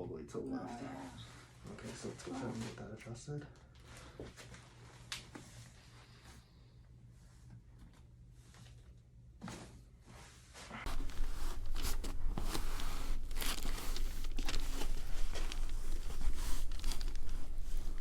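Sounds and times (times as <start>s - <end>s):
clothing rustling: 8.0s - 18.0s.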